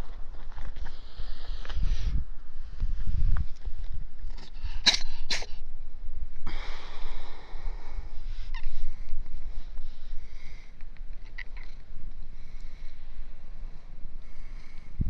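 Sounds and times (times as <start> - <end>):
cat sneezing: 4.8 - 5.5.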